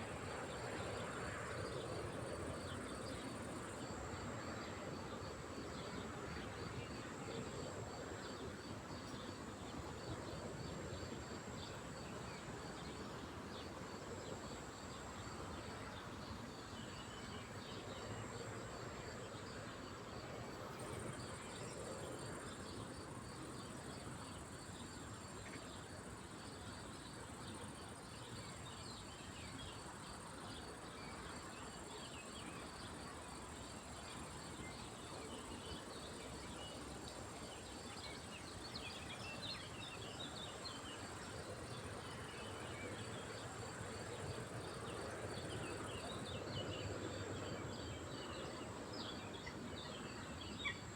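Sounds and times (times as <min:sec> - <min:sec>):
high continuous insect trill: 0:00.0 - 0:50.9
low rush of background noise: 0:00.0 - 0:50.9.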